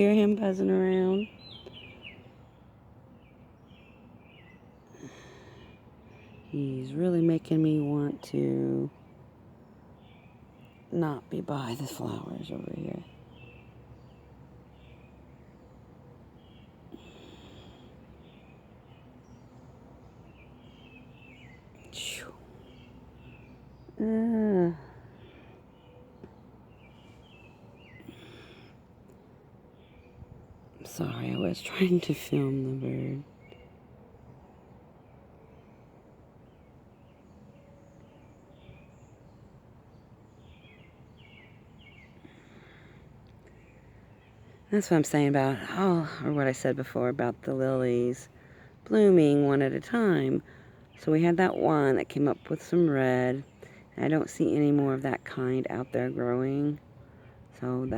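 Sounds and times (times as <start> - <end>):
low outdoor rumble: 0.0 - 57.9
small birds chirping: 0.0 - 57.9.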